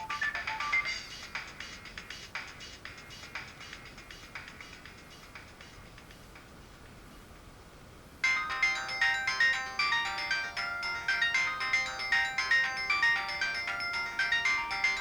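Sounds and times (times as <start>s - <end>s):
polyphonic phone ringtone: 0.0s - 1.1s, 8.2s - 15.0s.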